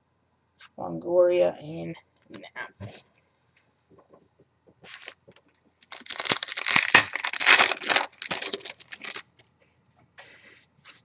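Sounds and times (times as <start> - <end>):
wrapper tearing and crinkling: 4.9 - 5.2, 5.8 - 9.3.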